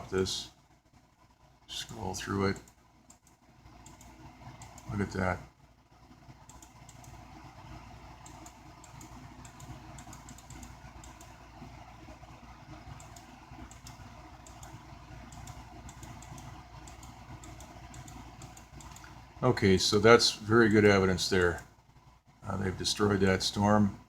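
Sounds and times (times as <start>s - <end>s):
low steady hum: 0.0s - 24.0s
computer controls clicking: 1.8s - 5.2s, 6.4s - 19.2s.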